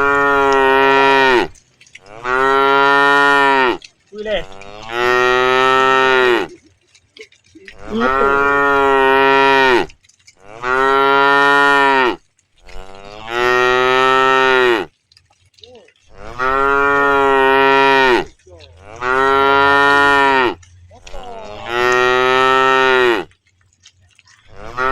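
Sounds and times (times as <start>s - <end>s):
cows mooing: 0.0s - 15.0s, 15.7s - 24.9s.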